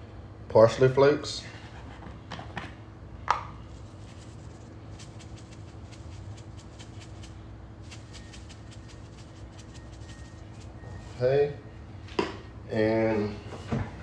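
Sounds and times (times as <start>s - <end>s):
steady low hum: 0.0s - 14.0s
seasoning container shaken: 3.6s - 11.2s.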